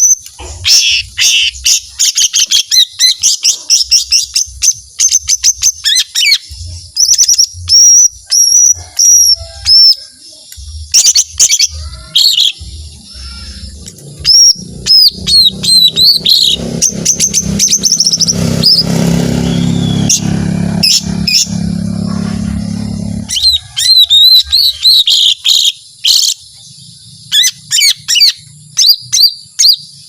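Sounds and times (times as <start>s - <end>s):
bird whistling and trilling: 0.0s - 21.6s, 23.2s - 30.0s
low hum: 12.6s - 23.8s.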